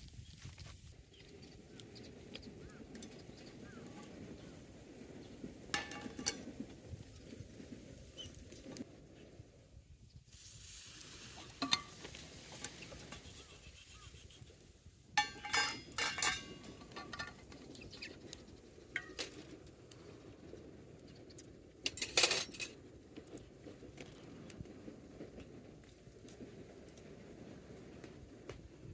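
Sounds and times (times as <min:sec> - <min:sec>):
faint steady hiss: 0:00.0 - 0:27.3
low steady background noise: 0:00.0 - 0:28.9
metal cookware clinking: 0:05.7 - 0:06.5, 0:11.4 - 0:13.2, 0:15.2 - 0:17.4.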